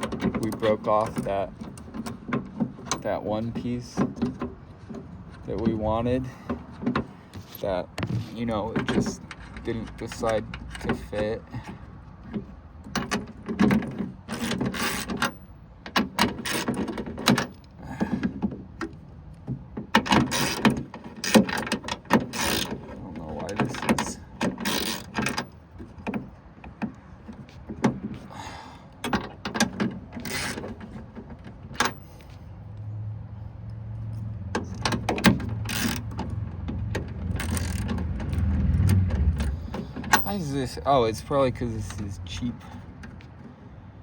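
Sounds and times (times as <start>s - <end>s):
hand ratchet clicking: 20.0s - 22.8s, 24.5s - 25.4s, 30.2s - 30.7s, 34.8s - 36.3s, 37.3s - 40.3s.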